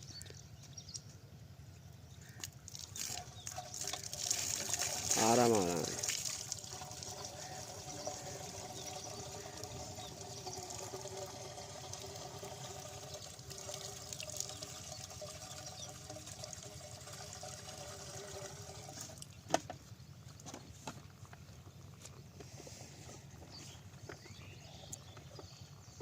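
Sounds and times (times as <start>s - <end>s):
water pouring and splashing: 2.4s - 19.6s
pump hum: 2.5s - 21.4s.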